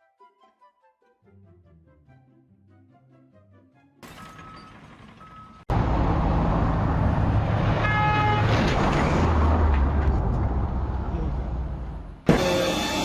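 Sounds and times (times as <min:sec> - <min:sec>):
horn toot: 0:07.8 - 0:08.6, 0:12.3 - 0:13.0.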